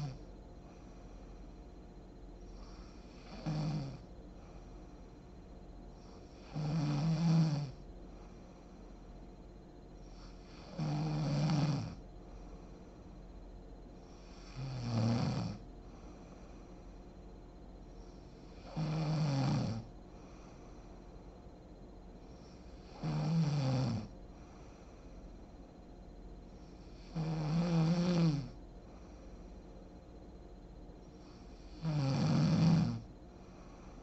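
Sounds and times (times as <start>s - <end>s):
woman snoring: 0.0s - 0.2s, 2.5s - 4.1s, 6.0s - 7.8s, 10.0s - 12.0s, 14.0s - 15.6s, 18.1s - 19.9s, 22.3s - 24.2s, 26.6s - 28.6s, 31.2s - 34.0s.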